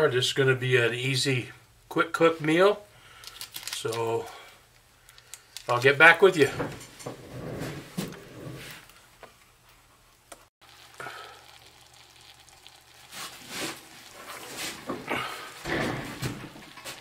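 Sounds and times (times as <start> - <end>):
chicken sizzling in hot oil: 10.6 - 14.8.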